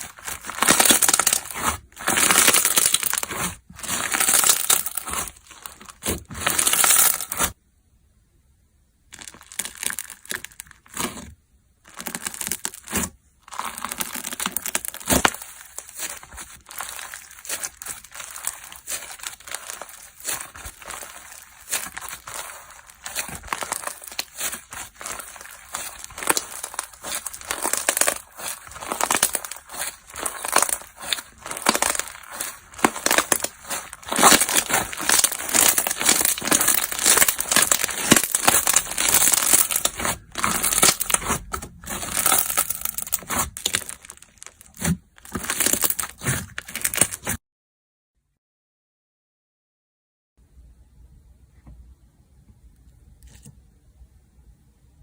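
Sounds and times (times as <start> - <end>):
crackling and popping: 0.0 - 7.6, 9.1 - 47.4
slime squished by hand: 0.0 - 7.6, 11.9 - 47.4.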